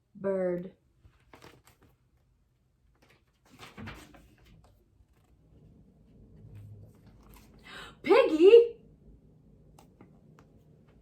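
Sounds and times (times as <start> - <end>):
paper rustle: 1.0 - 5.5, 6.6 - 7.6.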